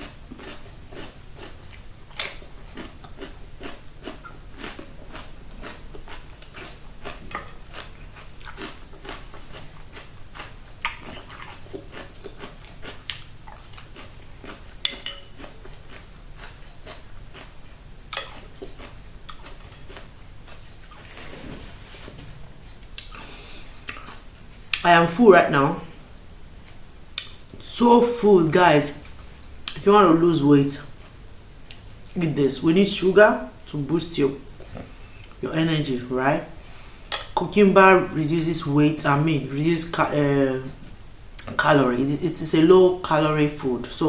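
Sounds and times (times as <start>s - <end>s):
chewing and crunching cucumber: 0.0s - 21.2s.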